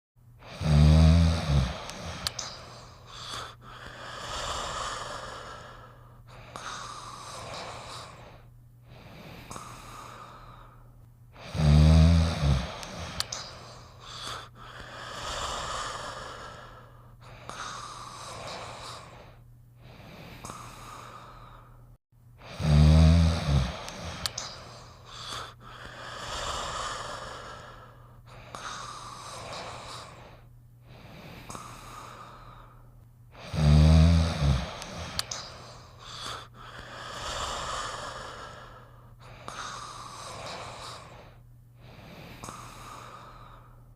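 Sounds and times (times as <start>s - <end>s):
cartoon character snoring: 0.4s - 2.4s, 11.4s - 13.4s, 22.4s - 24.5s, 33.4s - 35.4s.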